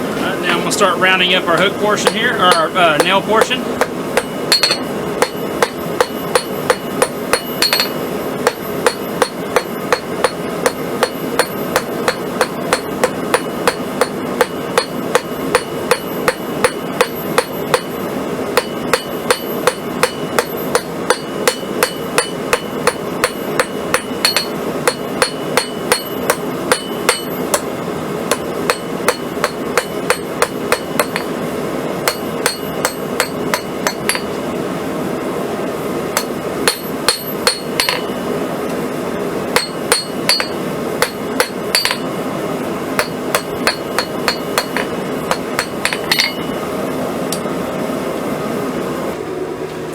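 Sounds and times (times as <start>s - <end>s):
steady rushing noise: 0.0s - 49.9s
hammer ringing on anvil: 1.5s - 18.0s, 18.6s - 27.7s, 28.3s - 31.3s, 32.0s - 34.3s, 36.2s - 38.2s, 39.5s - 42.1s, 43.0s - 46.6s.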